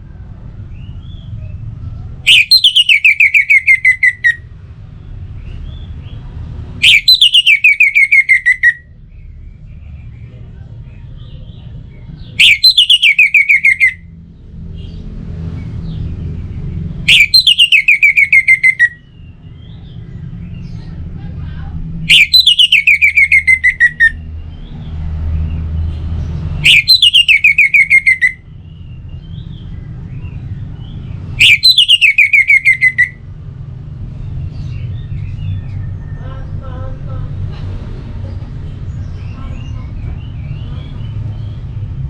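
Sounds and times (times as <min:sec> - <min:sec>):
thrush call: 0:02.3 - 0:04.4, 0:26.6 - 0:28.4.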